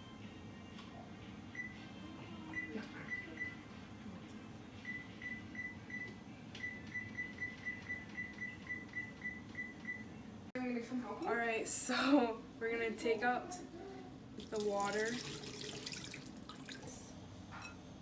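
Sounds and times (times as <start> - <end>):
oven timer keypad beeping: 4.9 - 10.1.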